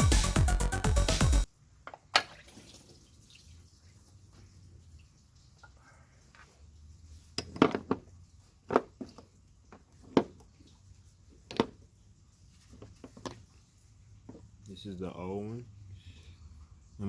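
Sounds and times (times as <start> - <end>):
metal tools clanking and knocking: 7.4 - 8.1.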